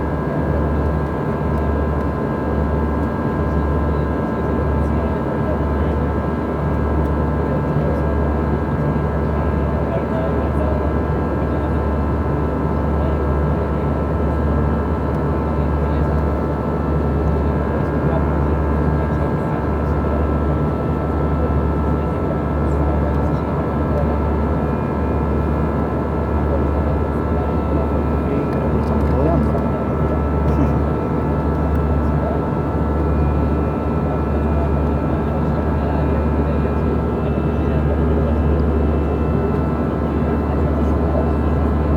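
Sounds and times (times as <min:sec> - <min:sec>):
airplane cabin engine drone: 0:02.9 - 0:06.0, 0:07.0 - 0:08.0, 0:15.1 - 0:41.9.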